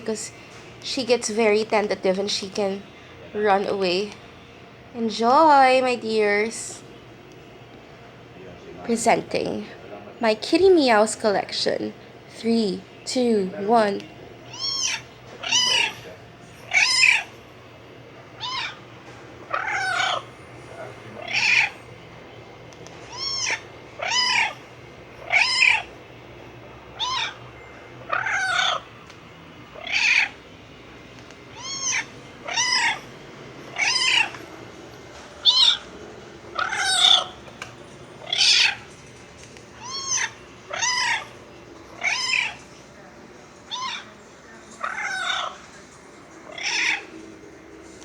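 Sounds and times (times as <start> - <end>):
cat meowing: 14.5 - 16.1, 16.7 - 17.3, 18.4 - 18.8, 19.5 - 20.3, 21.2 - 21.8, 23.1 - 24.6, 25.2 - 25.9, 27.0 - 27.4, 28.0 - 28.8, 29.8 - 30.4, 31.5 - 33.0, 33.7 - 34.4, 35.4 - 35.9, 36.5 - 37.4, 38.2 - 38.9, 39.8 - 41.3, 42.0 - 42.7, 43.7 - 44.1, 44.8 - 45.6, 46.5 - 47.1.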